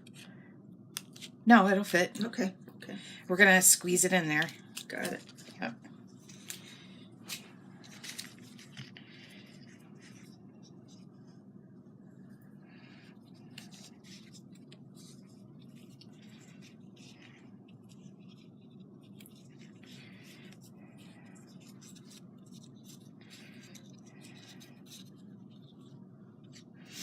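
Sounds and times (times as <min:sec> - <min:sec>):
steady low hum: 0:00.0 - 0:27.0
craft materials rustling: 0:04.3 - 0:11.4.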